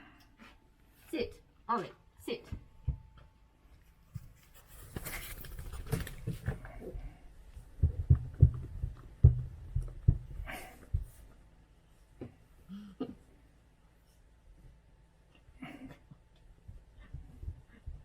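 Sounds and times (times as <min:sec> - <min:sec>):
rustling: 0:03.8 - 0:11.4
low thumps: 0:06.3 - 0:11.3.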